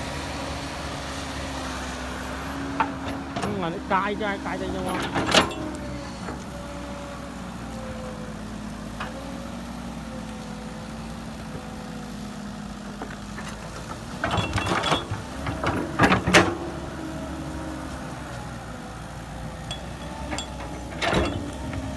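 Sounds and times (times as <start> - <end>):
diesel engine running: 0.0 - 21.9
metallic clanking and knocking: 2.7 - 6.5, 13.3 - 17.0, 19.5 - 21.9.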